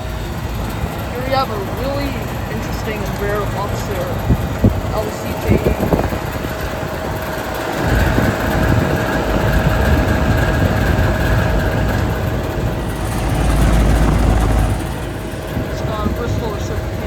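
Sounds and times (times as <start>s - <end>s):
constant whine: 11.9s - 16.8s
low rumble: 12.6s - 15.7s.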